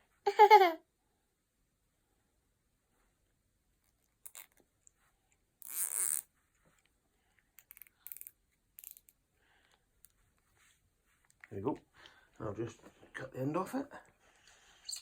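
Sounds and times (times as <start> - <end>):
cable tie ratchet zipping: 5.6 - 6.3.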